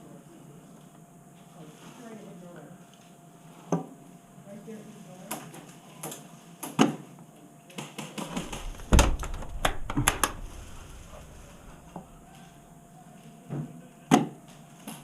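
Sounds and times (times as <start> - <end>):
sharp clicks and knocks: 8.2 - 12.3
low rumble: 8.3 - 12.9.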